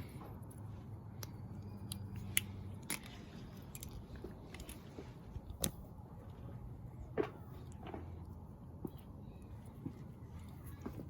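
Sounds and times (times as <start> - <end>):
faint low hum: 0.0 - 11.0
small parts clicking and crunching: 1.2 - 5.8.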